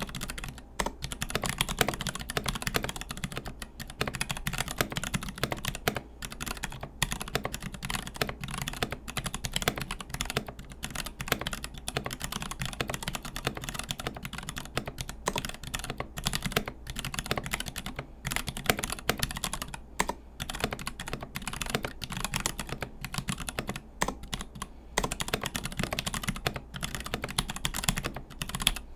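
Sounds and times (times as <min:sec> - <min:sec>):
fast mechanical keyboard typing: 0:00.0 - 0:28.8.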